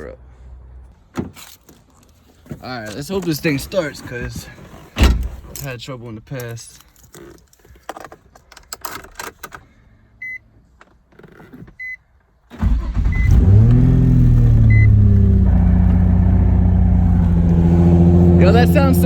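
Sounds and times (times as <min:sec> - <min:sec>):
car engine starting and idling: 0:11.7 - 0:19.0
short electronic beeps: 0:14.7 - 0:15.0.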